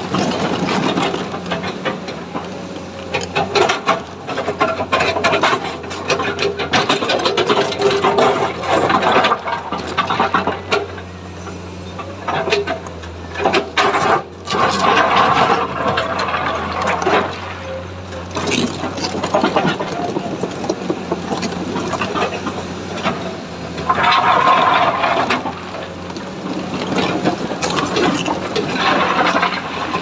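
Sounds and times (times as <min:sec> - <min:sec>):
knocks and rattles: 0:00.0 - 0:11.1, 0:18.2 - 0:30.0
excavator diesel engine running: 0:00.0 - 0:30.0.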